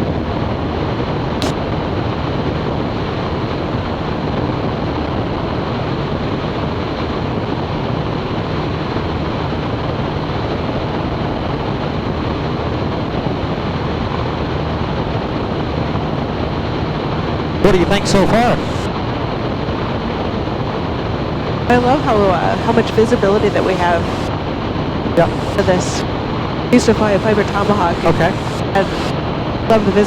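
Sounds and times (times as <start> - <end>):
aircraft engine and propeller drone: 17.6 - 18.9, 21.7 - 24.6, 25.2 - 30.0.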